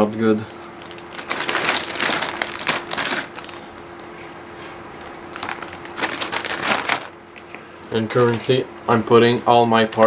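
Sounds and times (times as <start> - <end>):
plastic bag crinkling: 0.0 - 4.0, 4.9 - 7.2
faint steady hum: 0.0 - 10.0.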